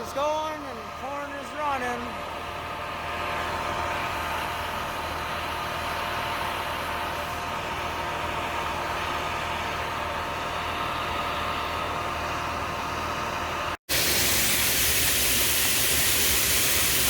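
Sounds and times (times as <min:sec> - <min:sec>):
grain dryer fan and augers drone: 0:00.0 - 0:17.0.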